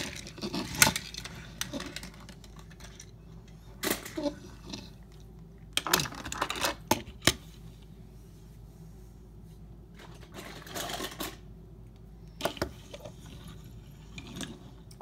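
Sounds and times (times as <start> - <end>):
toy cars clicking and clattering: 0.0 - 4.8, 5.8 - 7.4, 10.0 - 11.4.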